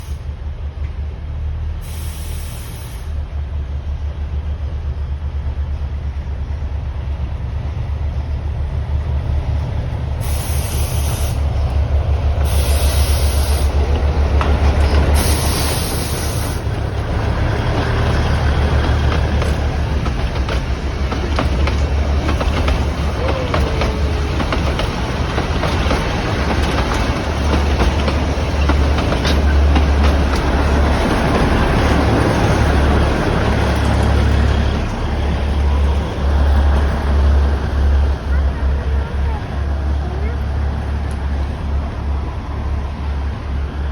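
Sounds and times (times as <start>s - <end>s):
hiss bursts: 0.0s - 0.4s, 1.8s - 3.3s, 10.1s - 11.8s, 12.4s - 13.9s, 15.0s - 17.0s
train engine drone: 0.0s - 43.9s
wheels clicking over rail joints: 13.3s - 15.7s, 16.7s - 35.1s.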